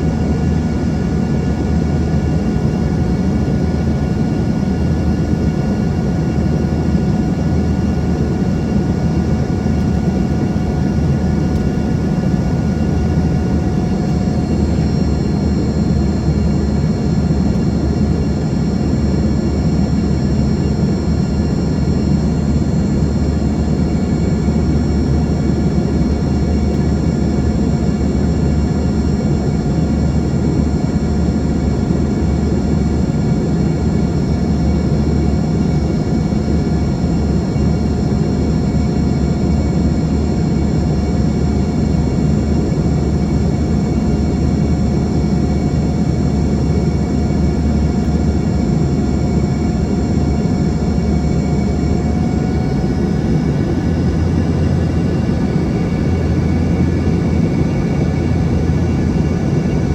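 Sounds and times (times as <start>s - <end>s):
jet engine cabin drone: 0.0s - 59.9s
faint whining tones: 42.7s - 59.9s.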